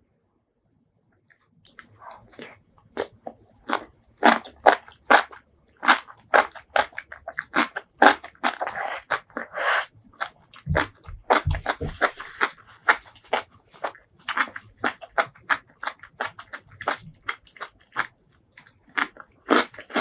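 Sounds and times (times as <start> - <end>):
crisp wet eating crunches: 1.3 - 20.0.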